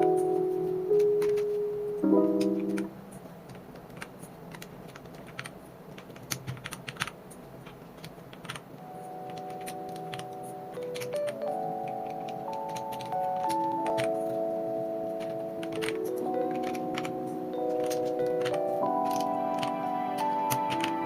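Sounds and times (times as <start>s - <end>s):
keycaps clicking onto keyboard: 0.0s - 2.9s, 3.5s - 14.4s, 15.1s - 21.0s
soft background music: 0.0s - 3.4s, 8.4s - 21.0s.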